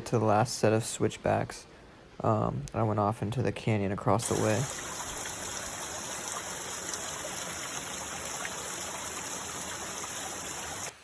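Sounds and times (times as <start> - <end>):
creek water running: 0.1 - 11.0.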